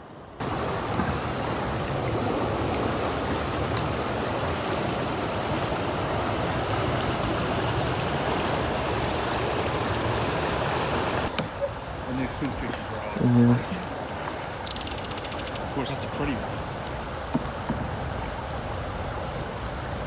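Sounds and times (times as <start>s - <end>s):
creek water rushing: 0.0s - 20.0s
faint sharp ticks: 3.7s - 4.9s.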